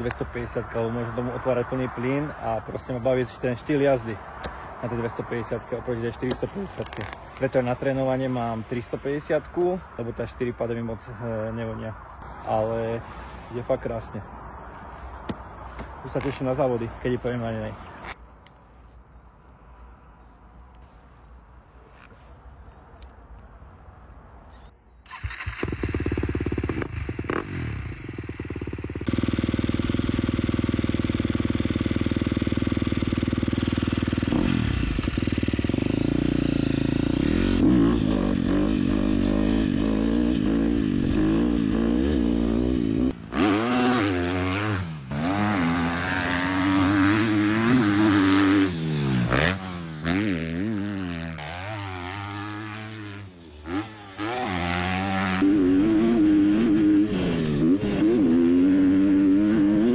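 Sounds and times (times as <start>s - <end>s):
motocross engine revving: 25.1s - 59.9s.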